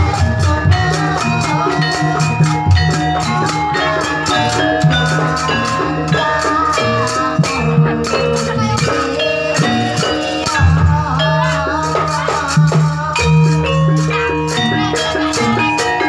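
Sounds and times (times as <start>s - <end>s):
metallophone keys and gongs: 0.0s - 16.0s
wavering lead melody: 0.0s - 16.0s.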